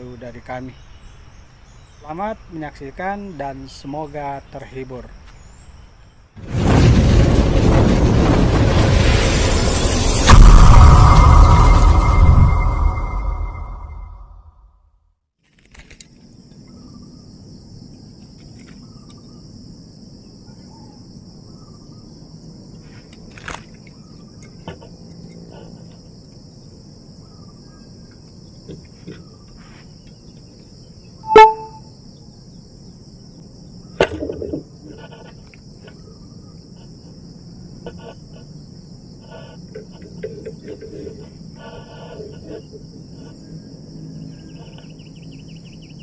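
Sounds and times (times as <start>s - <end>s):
insects droning: 0.0s - 12.1s, 15.4s - 46.0s
short sharp sound: 10.1s - 14.4s, 31.3s - 31.8s.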